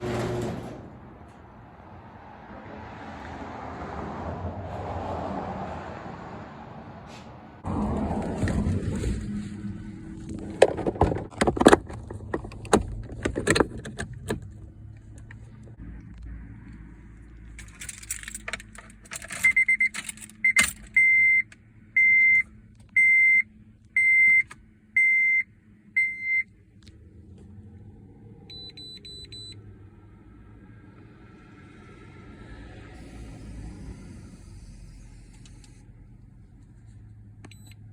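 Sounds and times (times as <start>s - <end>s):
keys jangling: 17.6s - 20.9s
car warning chime beeping: 19.4s - 26.5s, 28.5s - 29.6s, 37.5s - 37.8s.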